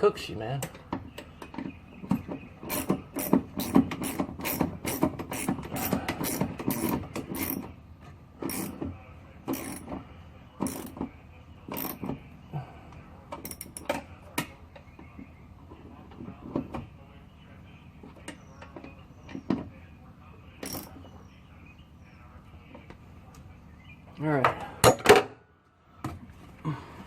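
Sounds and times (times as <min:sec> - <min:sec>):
ratchet wrench clicking: 0:02.7 - 0:07.6, 0:08.5 - 0:08.8, 0:09.5 - 0:09.8, 0:10.6 - 0:10.9, 0:20.6 - 0:20.9.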